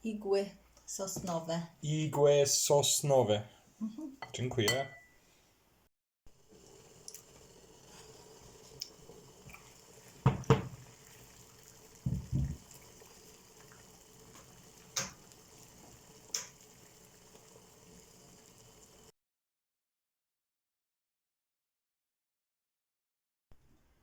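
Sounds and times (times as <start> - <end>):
kitchenware knocking and clinking: 4.2 - 5.1, 10.2 - 10.8.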